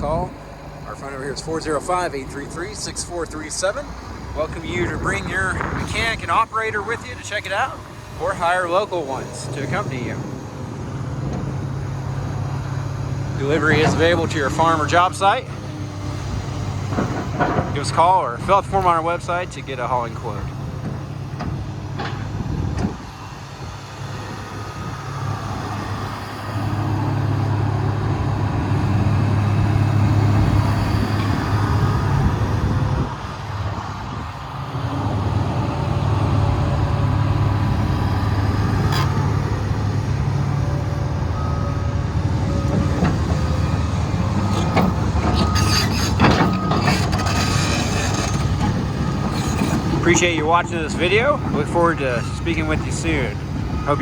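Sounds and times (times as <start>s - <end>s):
excavator diesel engine running: 0.0s - 54.0s
metal knocks and clanks: 13.4s - 15.2s, 16.5s - 18.9s, 20.7s - 23.0s, 41.0s - 52.9s.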